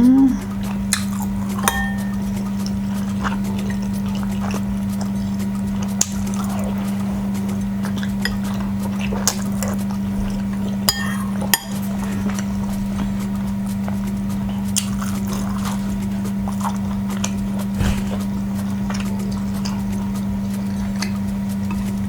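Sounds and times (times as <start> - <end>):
steady low hum: 0.0 - 22.0
utensils clinking on a dish: 0.9 - 4.6, 7.8 - 12.4.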